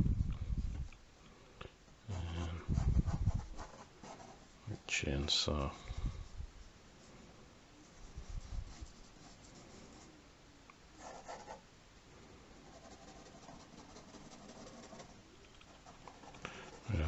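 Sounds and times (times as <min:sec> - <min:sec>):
drawing tool scratching paper: 0:12.6 - 0:17.0.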